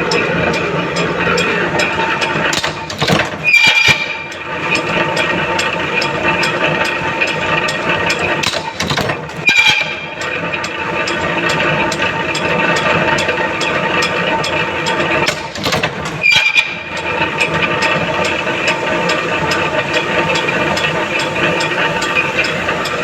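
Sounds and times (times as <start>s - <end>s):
regular ticking: 0.0s - 2.9s
machine tool running: 0.0s - 23.0s.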